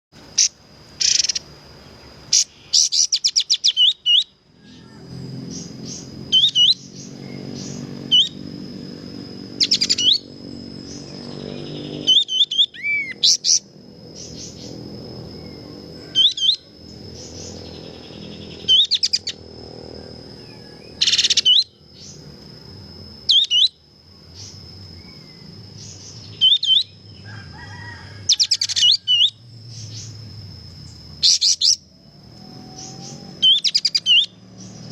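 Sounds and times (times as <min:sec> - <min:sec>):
bird high chirping phrases: 0:00.4 - 0:01.5, 0:02.3 - 0:08.6, 0:09.6 - 0:19.5, 0:23.3 - 0:23.8, 0:24.4 - 0:27.1, 0:32.8 - 0:34.8.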